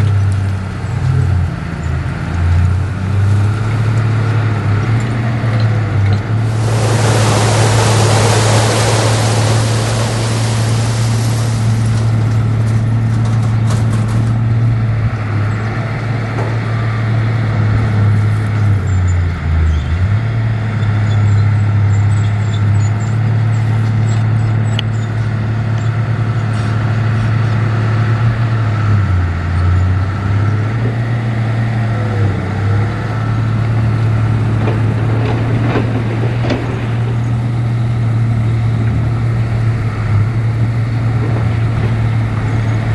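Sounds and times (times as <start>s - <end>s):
diesel machinery engine drone: 0.0s - 42.9s
loud hiss: 6.3s - 12.7s.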